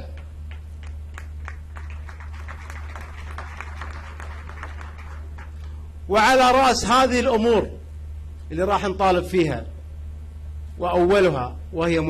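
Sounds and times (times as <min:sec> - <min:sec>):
low electrical hum: 0:00.0 - 0:12.0
audience applauding: 0:00.5 - 0:05.8.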